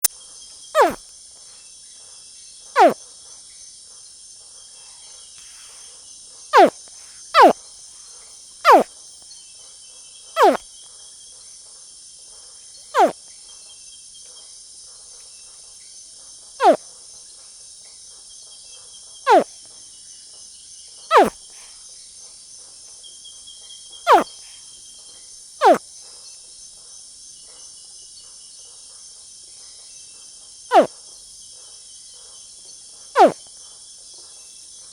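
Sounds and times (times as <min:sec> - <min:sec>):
crickets chirping: 0:00.0 - 0:01.0, 0:01.8 - 0:03.0, 0:10.4 - 0:10.6, 0:19.3 - 0:19.5, 0:20.5 - 0:21.8, 0:23.2 - 0:24.8, 0:30.7 - 0:34.8
young crocodile chirping: 0:00.8 - 0:01.0, 0:02.8 - 0:03.0, 0:07.4 - 0:07.6, 0:08.7 - 0:08.9, 0:10.4 - 0:10.6, 0:16.6 - 0:16.8, 0:19.3 - 0:19.5, 0:21.1 - 0:21.3, 0:33.2 - 0:33.4.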